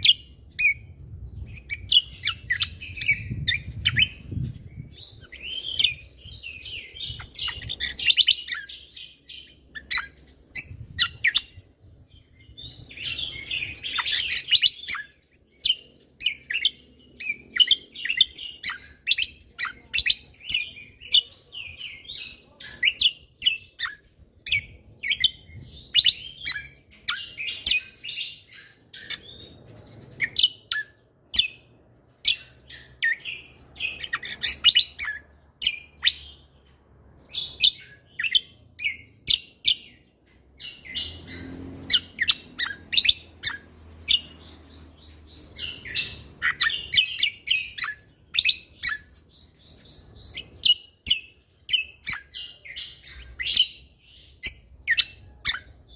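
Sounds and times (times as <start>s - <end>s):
songbird warbling and chipping: 0.0s - 36.6s, 37.2s - 55.9s.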